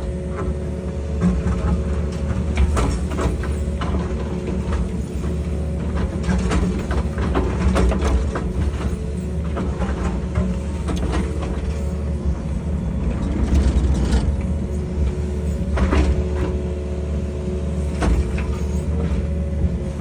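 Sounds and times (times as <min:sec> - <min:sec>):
excavator engine running: 0:00.0 - 0:20.0.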